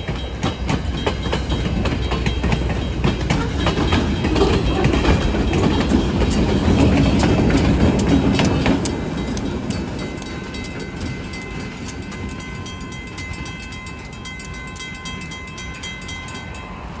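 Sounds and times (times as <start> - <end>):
train wheels clicking over rails: 0.0 - 17.0.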